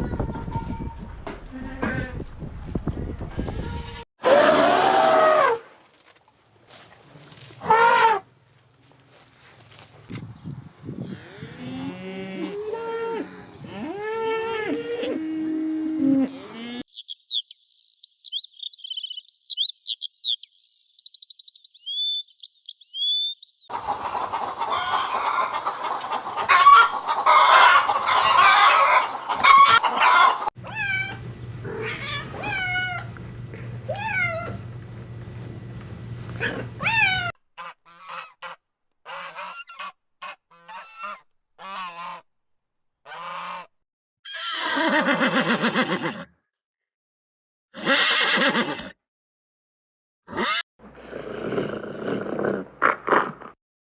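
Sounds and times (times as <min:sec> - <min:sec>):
geese honking: 0:23.7 - 0:37.3
poultry clucking: 0:23.7 - 0:37.3.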